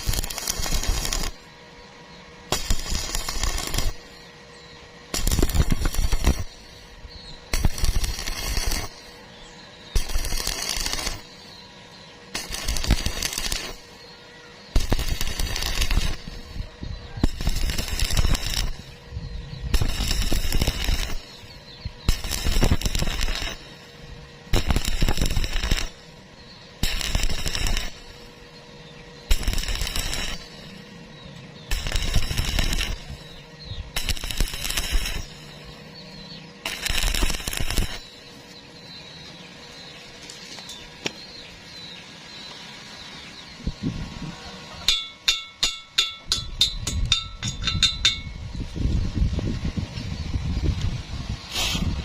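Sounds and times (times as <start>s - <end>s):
welding arc crackling: 0.0s - 1.6s, 2.4s - 4.3s, 5.0s - 11.6s, 12.2s - 42.5s.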